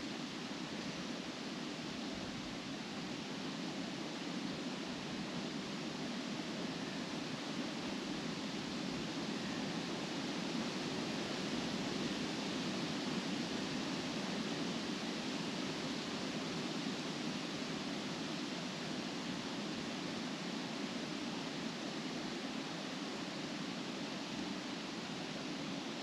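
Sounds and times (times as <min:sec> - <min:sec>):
wind rustling leaves: 0:00.0 - 0:26.0.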